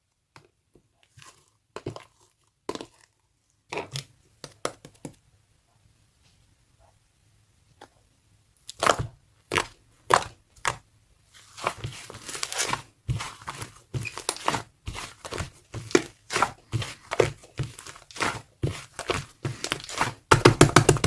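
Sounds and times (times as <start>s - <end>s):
slime squelching by hand: 8.6s - 20.3s.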